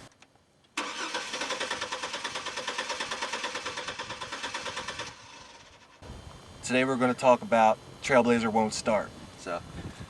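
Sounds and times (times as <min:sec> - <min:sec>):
starter motor cranking engine: 0:00.8 - 0:06.0.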